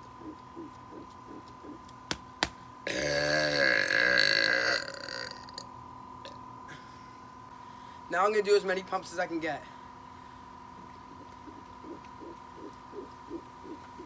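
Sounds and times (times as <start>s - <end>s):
man burping: 2.9s - 5.6s.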